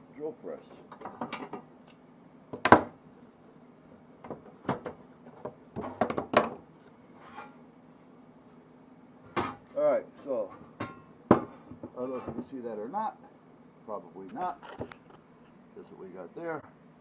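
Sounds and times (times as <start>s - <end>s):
tools knocking and clattering: 0.9s - 1.7s, 2.6s - 2.9s, 4.2s - 6.6s, 9.3s - 9.6s, 10.6s - 12.5s.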